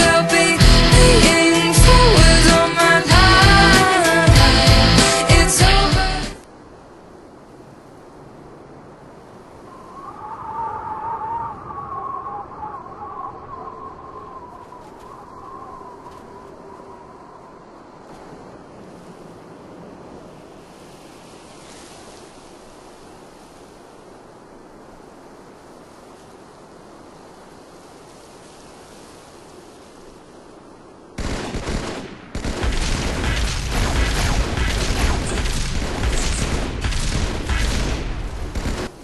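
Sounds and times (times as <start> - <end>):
rapid gunfire: 31.2 - 39.0.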